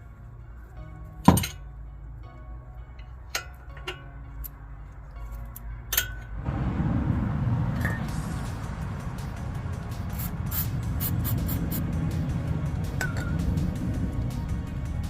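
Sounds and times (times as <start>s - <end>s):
metal tools clinking: 1.3s - 1.7s, 3.0s - 4.4s, 5.2s - 6.4s
rushing noise: 6.3s - 15.0s
background music with beat: 7.6s - 15.0s.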